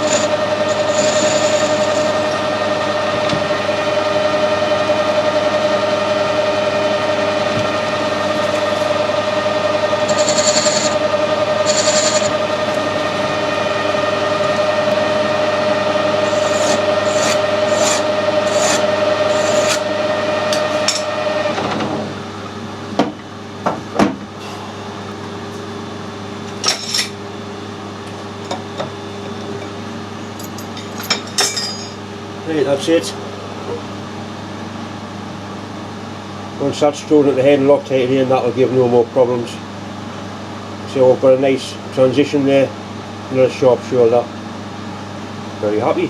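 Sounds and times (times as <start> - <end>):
high scraping of cutting: 0.0 - 2.7, 7.9 - 21.2
metal lathe running: 0.0 - 21.8, 24.7 - 34.0.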